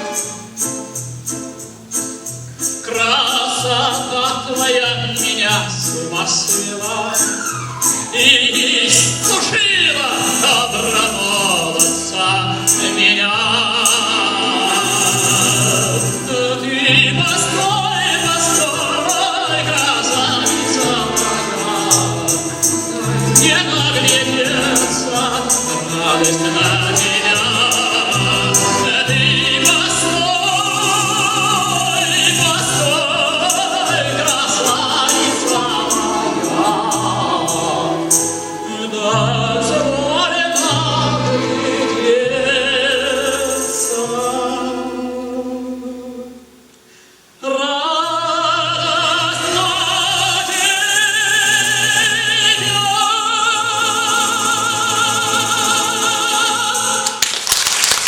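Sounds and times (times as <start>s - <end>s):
instrumental accompaniment: 0.0s - 45.0s
tenor singing: 0.0s - 58.0s.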